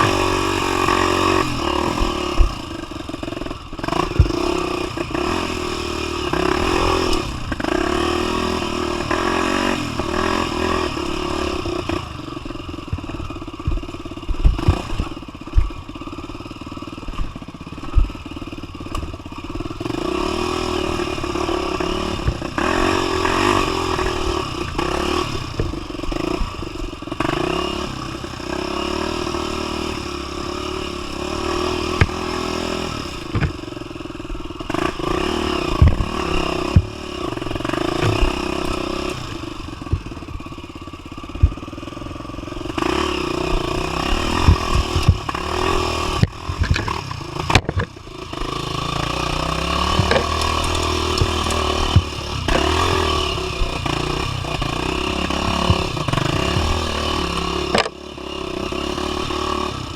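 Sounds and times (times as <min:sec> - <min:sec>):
motorbike engine revving: 0:00.0 - 0:59.9
knocks and rattles: 0:49.8 - 0:52.8.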